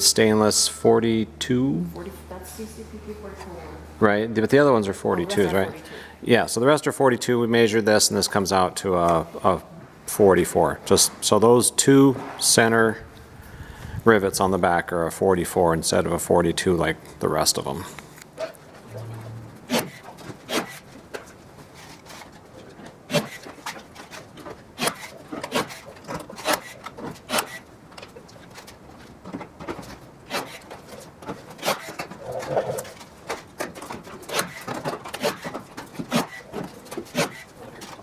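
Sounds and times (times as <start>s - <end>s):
bird cooing: 32.2s - 33.0s.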